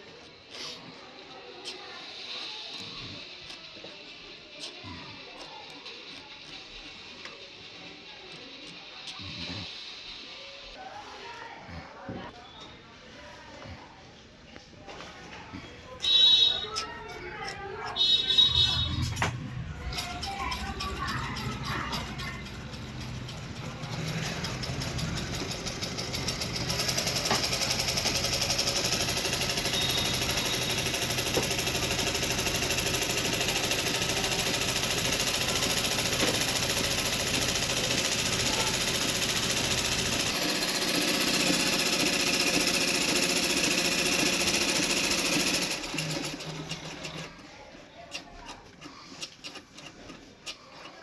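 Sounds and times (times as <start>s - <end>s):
sewing machine stitching rattle: 16.0s - 47.5s, 48.1s - 51.0s.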